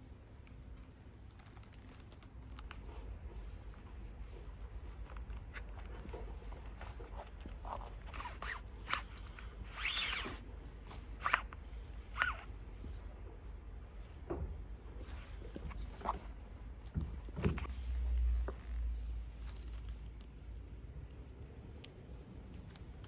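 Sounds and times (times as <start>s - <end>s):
tools scraping leather: 2.7s - 13.0s.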